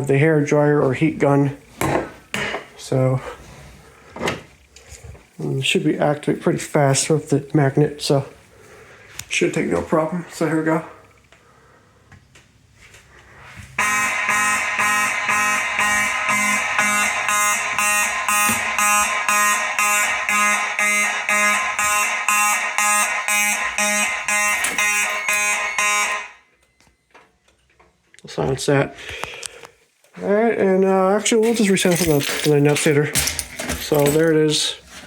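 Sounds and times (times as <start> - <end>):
fire alarm horns pulsing buzz: 13.8 - 26.9.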